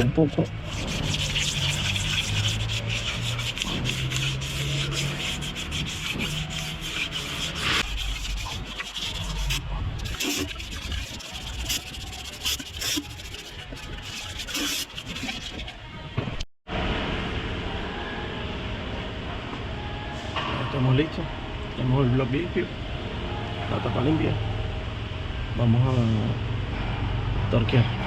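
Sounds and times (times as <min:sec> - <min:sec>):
sandpaper rubbing on metal: 0:00.0 - 0:15.8.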